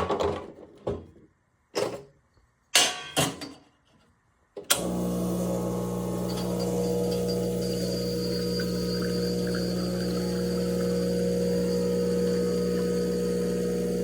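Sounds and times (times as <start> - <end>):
electric motor humming: 4.8 - 14.0.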